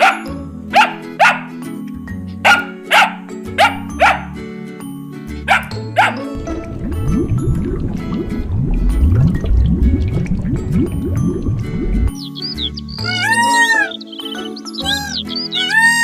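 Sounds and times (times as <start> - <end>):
dog barking: 0.0 - 1.6, 2.3 - 4.4, 5.4 - 6.3
music with repeating bass line: 5.3 - 13.0.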